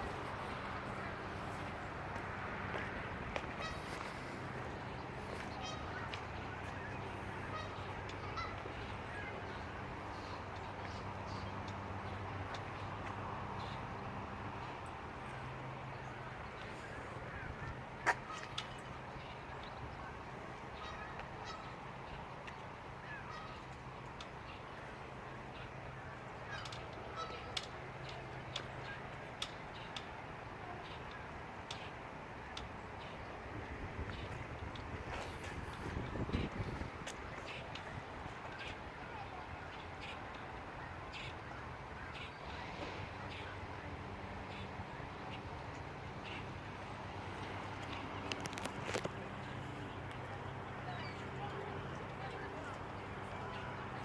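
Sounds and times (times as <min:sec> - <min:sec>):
geese calling: 0:00.0 - 0:11.5, 0:16.0 - 0:22.2, 0:23.0 - 0:31.9, 0:34.1 - 0:43.7, 0:44.4 - 0:54.0
faint bird calls: 0:03.5 - 0:11.6, 0:16.0 - 0:22.2, 0:24.4 - 0:31.9.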